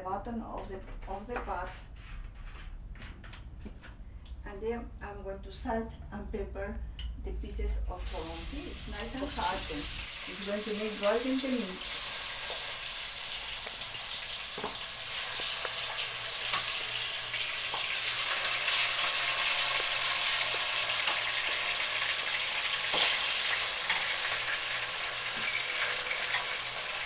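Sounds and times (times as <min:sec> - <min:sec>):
chicken sizzling in hot oil: 0:08.0 - 0:27.0.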